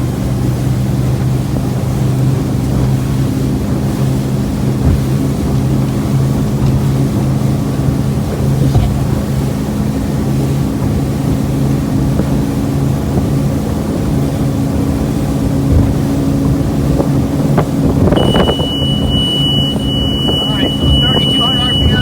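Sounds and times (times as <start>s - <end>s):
motorboat engine humming: 0.0s - 22.0s
wind buffeting microphone: 12.0s - 22.0s.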